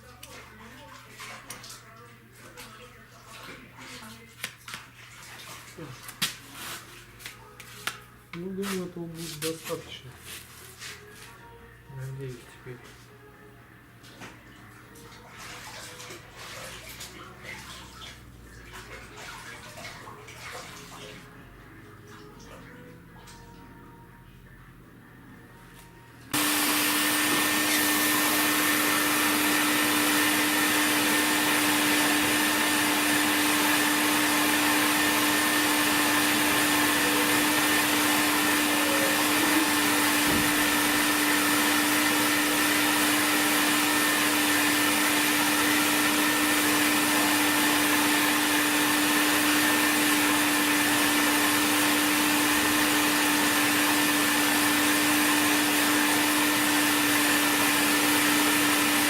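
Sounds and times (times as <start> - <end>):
motor-driven blower running: 26.3 - 59.0.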